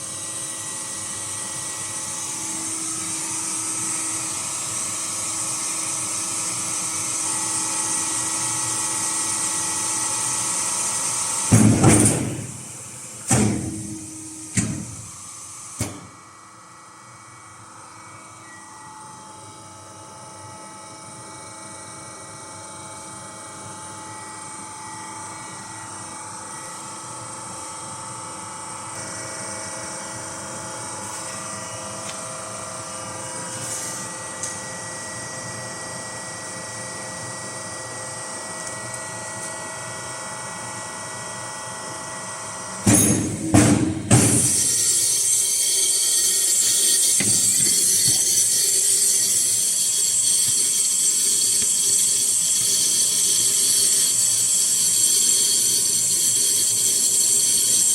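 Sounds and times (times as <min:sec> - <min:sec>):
machine humming with held tones: 0:00.0 - 0:57.9
machine clanking: 0:11.5 - 0:15.1, 0:42.9 - 0:45.6, 0:46.5 - 0:51.6.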